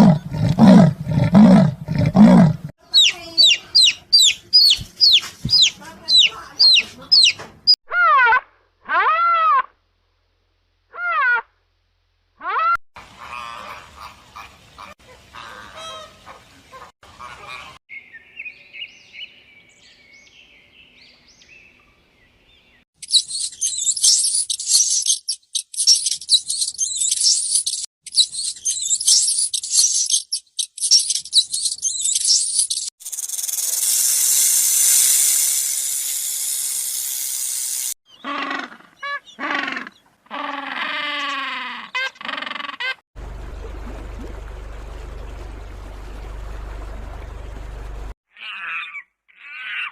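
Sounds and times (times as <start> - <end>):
rapid high-pitched chirping: 2.9 - 7.4, 23.0 - 38.0
steady hiss: 33.1 - 38.0.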